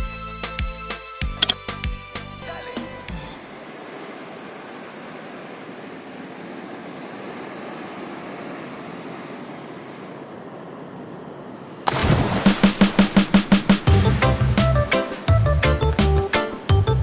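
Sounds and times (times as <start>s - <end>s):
loud drum-led music: 0.0s - 3.3s, 12.6s - 17.0s
ocean surf: 3.5s - 14.2s.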